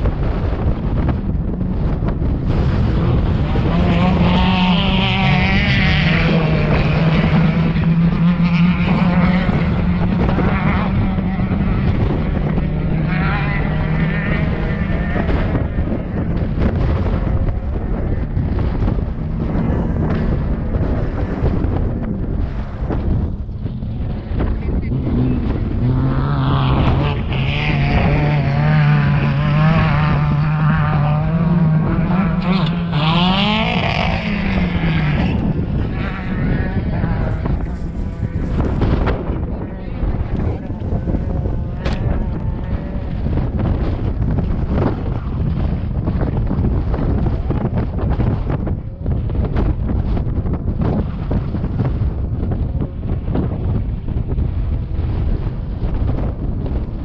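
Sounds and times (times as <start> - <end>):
steady low drone: 0.0 - 57.0
race vehicle engines revving past: 2.4 - 46.4.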